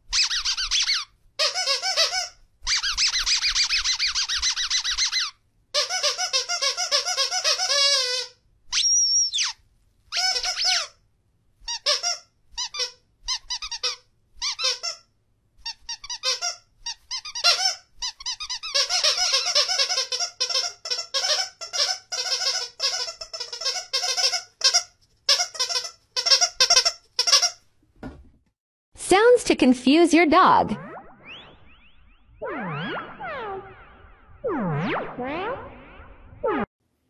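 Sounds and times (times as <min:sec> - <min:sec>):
high-pitched squeaks: 0:00.0 - 0:11.0, 0:15.7 - 0:27.6, 0:32.4 - 0:36.7.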